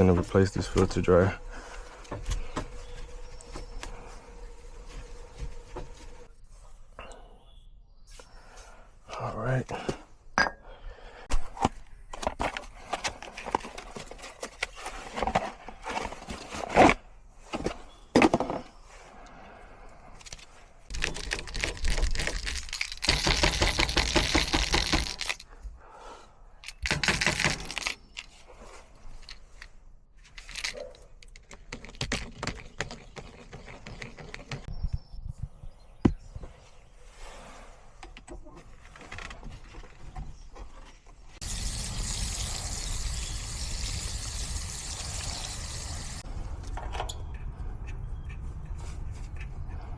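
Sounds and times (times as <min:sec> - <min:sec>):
tools clicking and scraping: 0:20.2 - 0:25.5, 0:26.6 - 0:28.5, 0:29.1 - 0:34.7.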